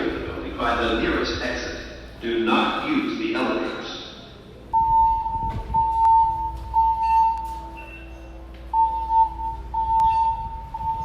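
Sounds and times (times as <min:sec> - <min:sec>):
fire alarm tone pulses: 0:04.7 - 0:11.0.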